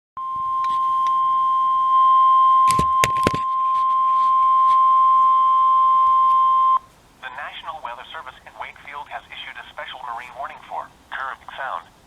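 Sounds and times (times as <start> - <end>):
radio static crackle: 7.2 - 12.0.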